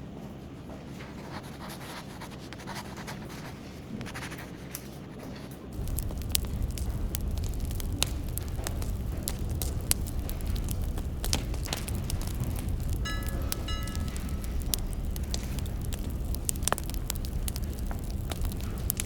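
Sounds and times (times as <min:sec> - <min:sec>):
low rumble of flames: 0:00.0 - 0:19.0
wood fire crackling: 0:00.2 - 0:19.0
sharp pops of fire: 0:05.7 - 0:19.0.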